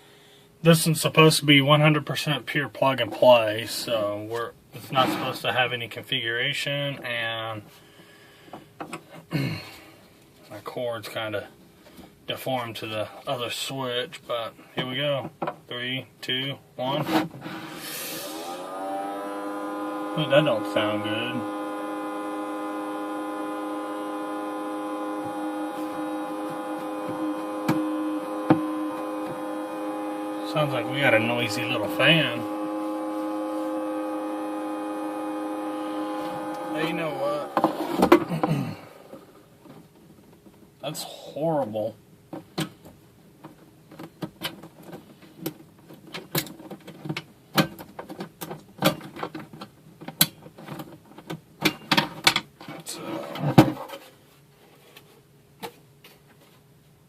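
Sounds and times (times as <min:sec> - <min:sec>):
cooling fan whining hum: 0:00.0 - 0:57.0
fan clicking and rattling: 0:42.3 - 0:54.0.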